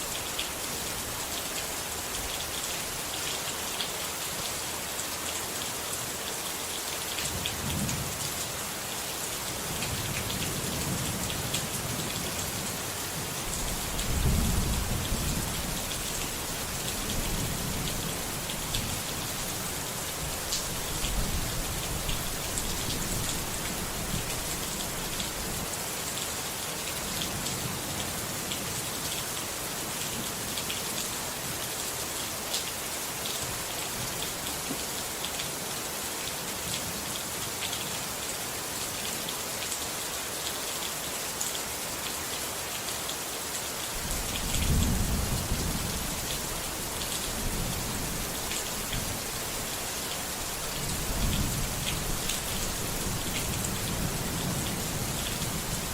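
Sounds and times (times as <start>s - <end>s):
steady rainfall: 0.0s - 55.9s.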